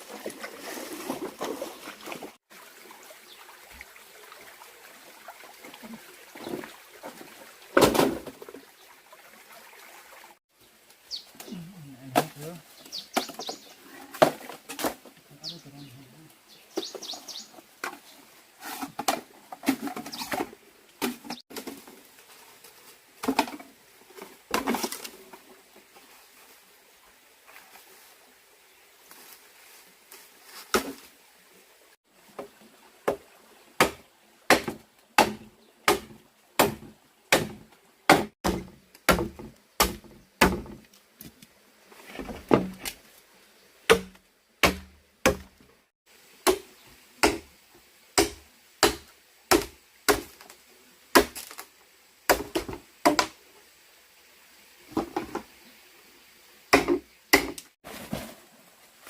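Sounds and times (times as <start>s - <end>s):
chopping blows on wood: 33.8s - 40.8s, 43.9s - 45.5s, 48.2s - 50.3s, 56.7s - 57.6s.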